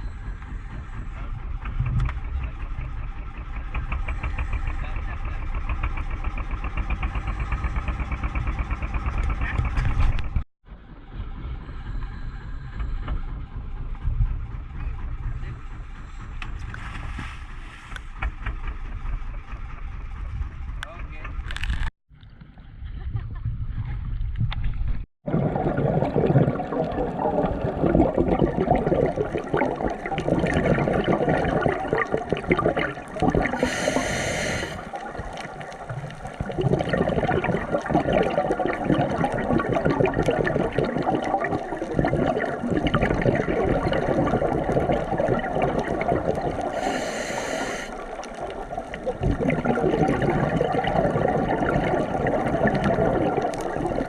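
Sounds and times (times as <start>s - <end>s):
water gurgling and churning: 25.2s - 54.0s.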